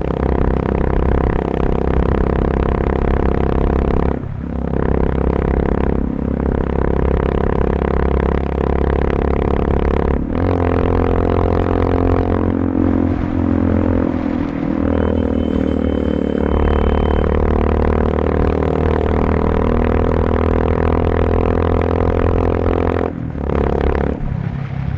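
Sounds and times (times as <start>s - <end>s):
motorcycle engine running: 0.0s - 24.6s.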